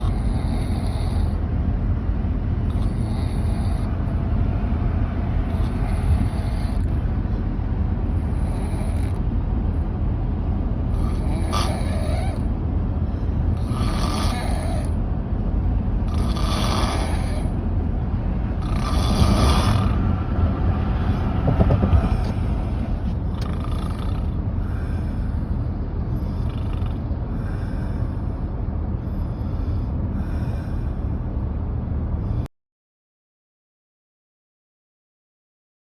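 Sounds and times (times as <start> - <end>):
person snoring: 13.6 - 15.0, 16.1 - 17.5, 18.6 - 20.0.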